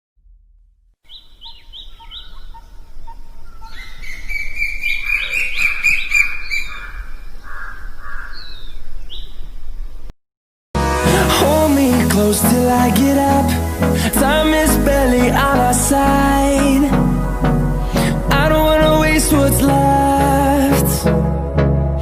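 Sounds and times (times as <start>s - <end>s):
birds chirping: 1.0s - 10.1s
bird high trill: 1.1s - 9.4s.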